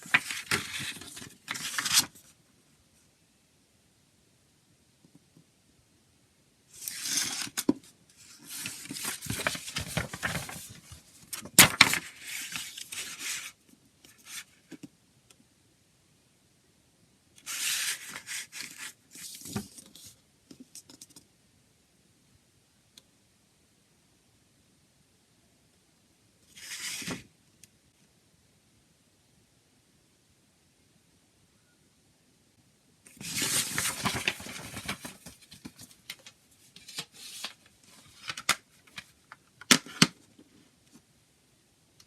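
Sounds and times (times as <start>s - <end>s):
plastic wrapping tearing and crinkling: 33.2s - 35.4s.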